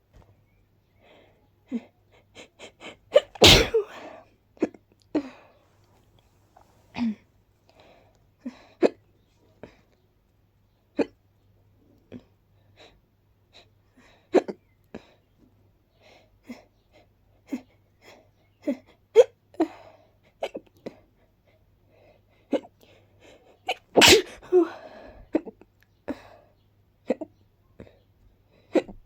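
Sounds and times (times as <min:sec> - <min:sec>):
person hiccuping: 0:03.2 - 0:04.0, 0:23.7 - 0:24.7
person sneezing: 0:03.2 - 0:04.2, 0:23.7 - 0:24.9.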